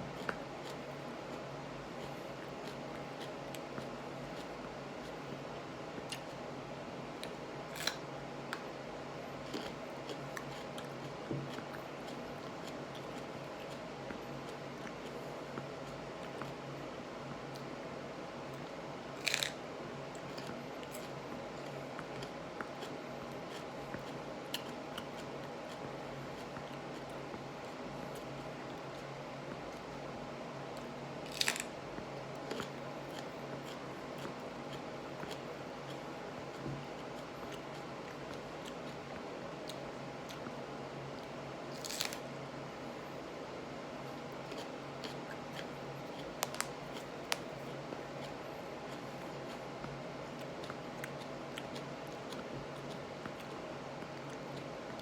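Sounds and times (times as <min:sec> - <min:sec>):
steady low hum: 0:00.0 - 0:55.0
faint chewing clicks: 0:00.2 - 0:06.4, 0:30.7 - 0:42.2, 0:44.4 - 0:55.0
crunch of pepper bitten: 0:19.2 - 0:19.6, 0:31.3 - 0:31.8, 0:41.7 - 0:42.2
chewing with wet mouth clicks: 0:44.4 - 0:55.0.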